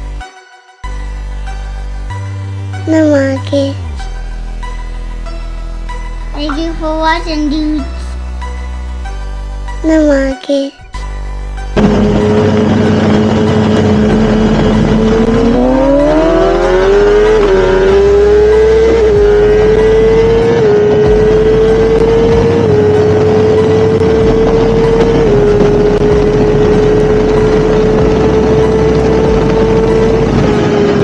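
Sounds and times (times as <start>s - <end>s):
motorcycle engine revving: 11.4s - 31.0s.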